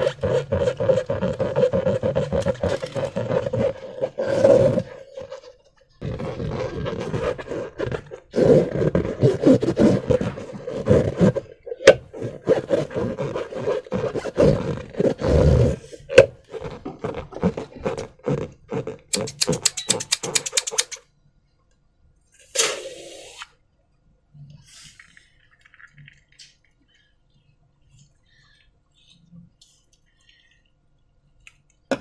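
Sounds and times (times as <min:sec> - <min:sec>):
rubbery squeaks and squelches: 0:00.0 - 0:21.0
sharp clicks: 0:19.2 - 0:21.0.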